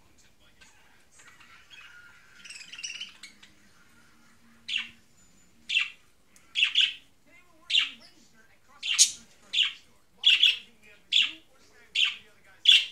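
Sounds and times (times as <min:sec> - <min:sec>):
budgerigar chirping: 0:01.7 - 0:03.6, 0:04.7 - 0:05.0, 0:05.7 - 0:06.0, 0:06.6 - 0:07.0, 0:08.8 - 0:12.9.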